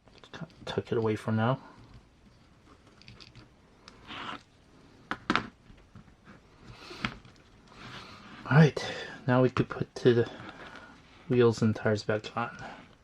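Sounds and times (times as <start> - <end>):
rustling: 0.0 - 8.6.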